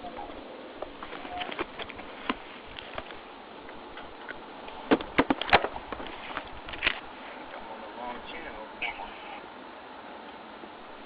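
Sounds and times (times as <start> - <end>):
steady background hiss: 0.0 - 11.0.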